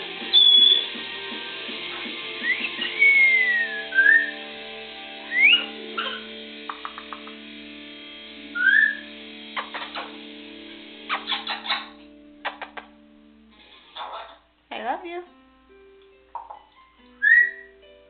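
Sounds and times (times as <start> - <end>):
parrot whistling: 0.3 - 0.9, 2.4 - 4.4, 5.3 - 7.3, 8.5 - 10.2, 11.1 - 12.0, 17.2 - 17.7
parrot clicks: 6.7 - 7.4.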